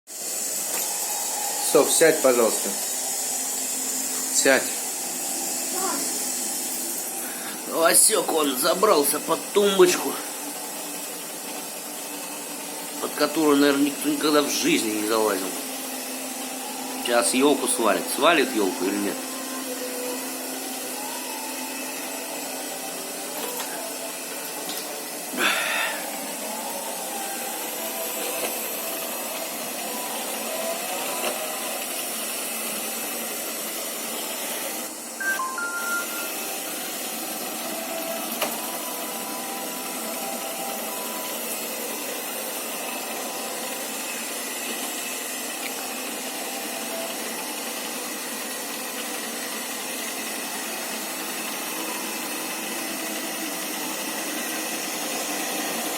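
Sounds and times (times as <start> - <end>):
robot vacuum whirring: 0.1 - 55.9.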